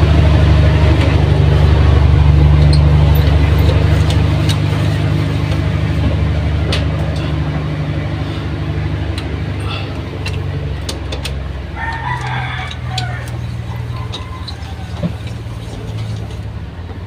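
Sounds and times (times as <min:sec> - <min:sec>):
engine droning: 0:00.0 - 0:17.0
rooster crowing: 0:11.4 - 0:16.5.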